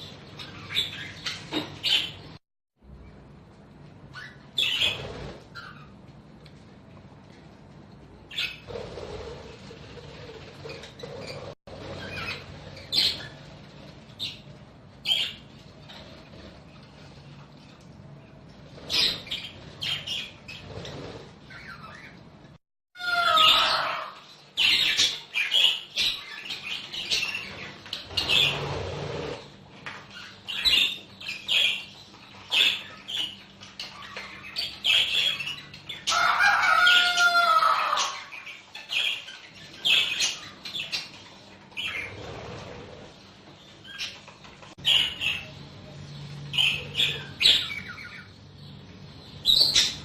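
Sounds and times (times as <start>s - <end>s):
budgerigars chirping: 43.8s - 45.6s, 46.5s - 50.0s.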